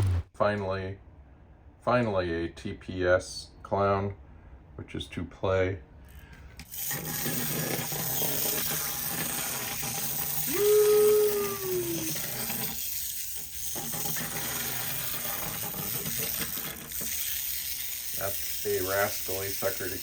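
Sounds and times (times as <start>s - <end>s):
short falling tone: 0.0s - 0.3s
wind-up toy gears whirring: 6.6s - 20.0s
ratchet clicks: 11.4s - 20.0s.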